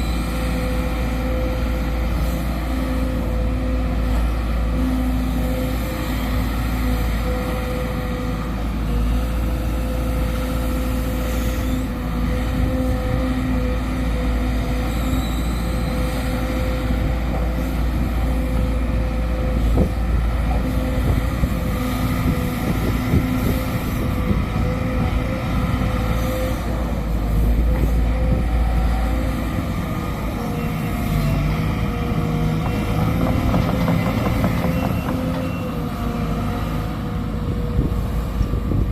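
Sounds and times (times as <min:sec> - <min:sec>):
excavator diesel engine running: 0:00.0 - 0:38.9
knock: 0:33.0 - 0:35.4.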